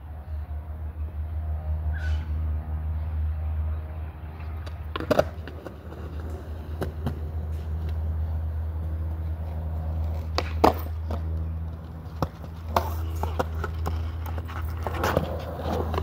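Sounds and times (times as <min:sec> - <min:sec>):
skateboard wheels rolling on pavement: 0:03.7 - 0:16.0
skateboard clacking: 0:04.6 - 0:16.0.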